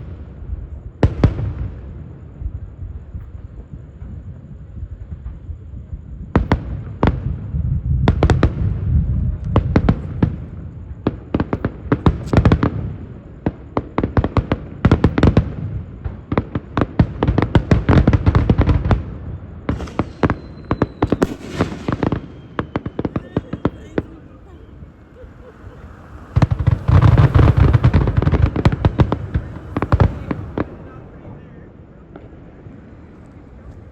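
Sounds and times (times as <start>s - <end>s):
fireworks bangs: 0.0s - 33.9s
hissing crackle: 18.7s - 31.0s.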